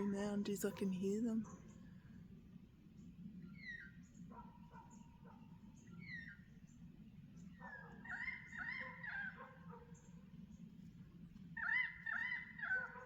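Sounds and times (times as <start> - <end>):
small birds chirping faintly: 0.0 - 13.0
distant dog whining and yelping: 3.6 - 6.4, 7.6 - 10.0, 11.6 - 13.0.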